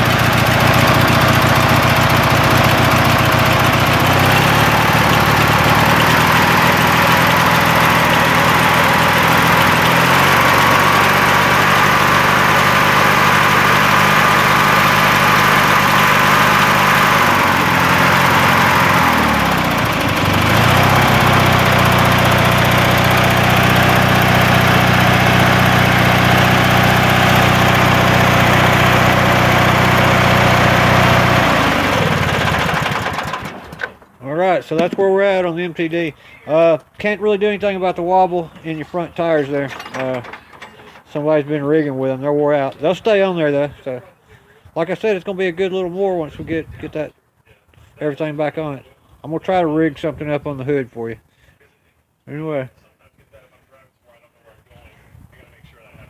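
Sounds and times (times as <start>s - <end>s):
lawn tractor engine revving: 0.0s - 43.8s.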